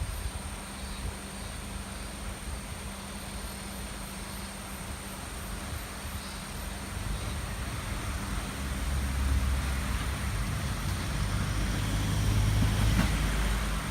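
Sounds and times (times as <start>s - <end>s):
faint high insect chirps: 0.0s - 10.1s
river rushing: 1.6s - 13.9s.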